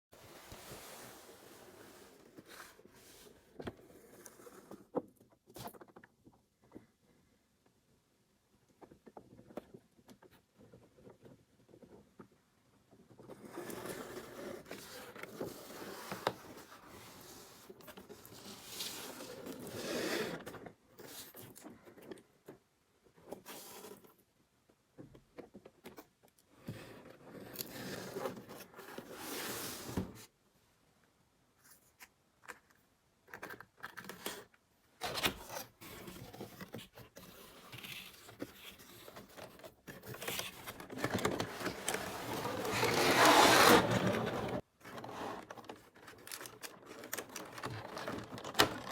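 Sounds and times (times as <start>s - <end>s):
cardboard and plastic rustling: 33.3s - 48.9s.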